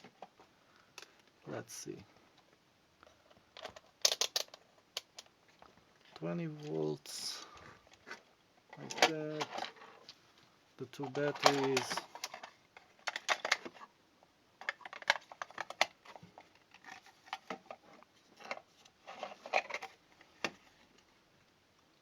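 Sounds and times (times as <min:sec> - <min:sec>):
hands handling small plastic parts: 0:02.4 - 0:10.2, 0:10.8 - 0:13.9, 0:14.6 - 0:21.1.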